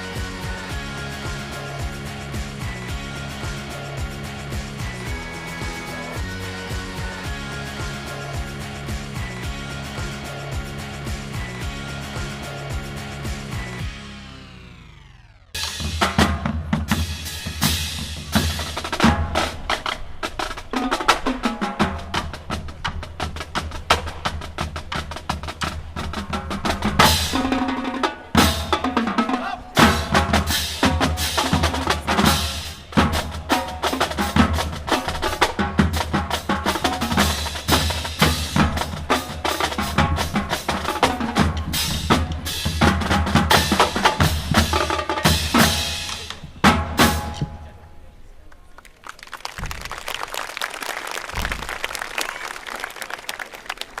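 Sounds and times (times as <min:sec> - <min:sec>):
drum-heavy music: 0:00.0 - 0:47.7.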